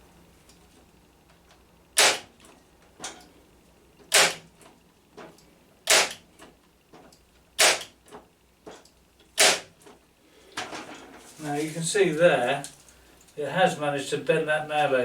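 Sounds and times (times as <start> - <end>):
electric nailer firing: 2.0 - 2.3, 4.1 - 4.5, 5.8 - 6.2, 7.6 - 8.0, 9.4 - 9.7.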